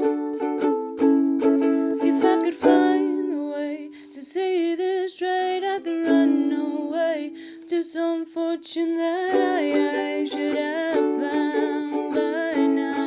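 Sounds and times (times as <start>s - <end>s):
strummed string instrument: 0.0s - 4.0s, 9.3s - 13.0s
woman singing: 1.8s - 13.0s.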